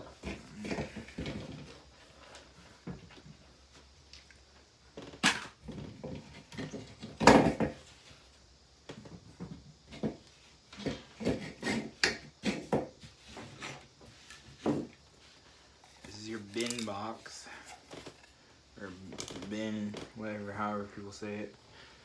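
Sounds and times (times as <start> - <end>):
plastic parts knocking and clattering: 0.2 - 1.8, 5.0 - 7.8, 15.9 - 18.3.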